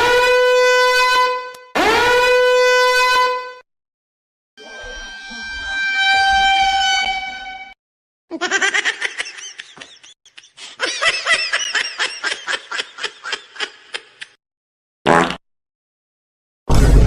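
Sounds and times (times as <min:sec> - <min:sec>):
cartoonish snickering giggle: 0:08.3 - 0:14.4.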